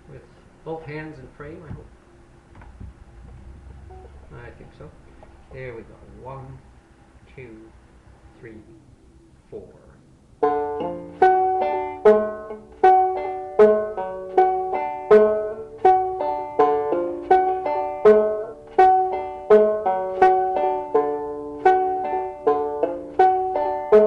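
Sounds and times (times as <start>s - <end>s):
banjo picked slowly: 3.2s - 6.6s, 10.4s - 24.0s.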